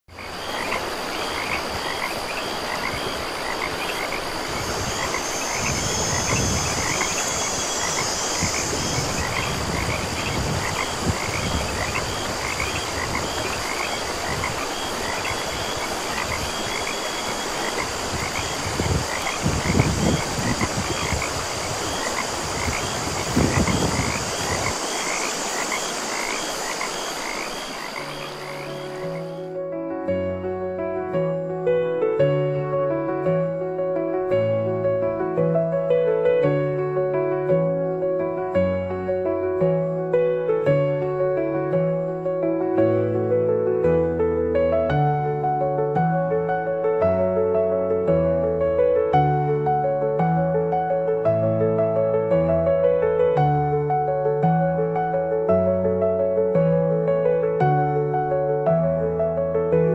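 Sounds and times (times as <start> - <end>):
low rumble gusts: 0.2 - 29.2.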